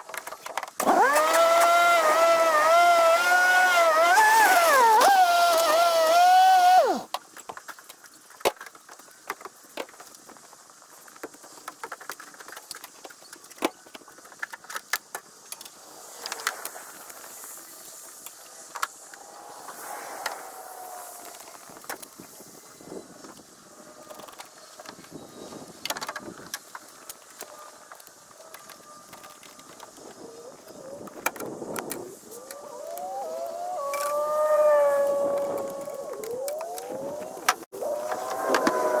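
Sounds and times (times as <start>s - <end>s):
sliding high-pitched whine: 32.0s - 39.0s.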